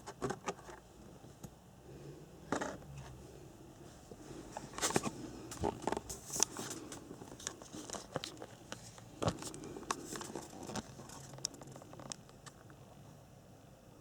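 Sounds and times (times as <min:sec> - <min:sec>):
packaging crinkling and rustling: 0:04.5 - 0:12.7.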